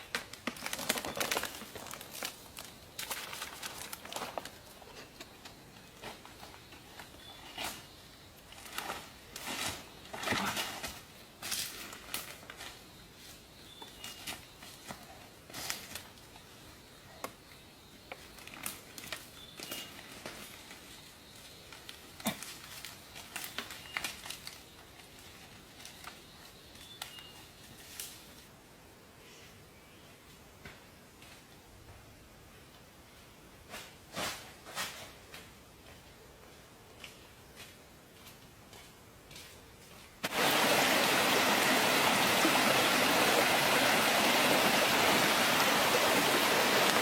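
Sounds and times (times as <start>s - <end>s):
rustling and crinkling: 0.0s - 16.6s, 18.1s - 28.5s, 33.6s - 35.6s.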